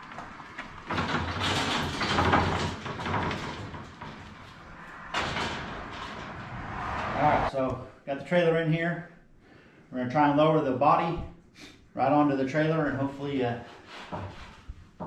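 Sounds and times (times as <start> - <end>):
trailer rattling across floor: 0.1 - 7.5.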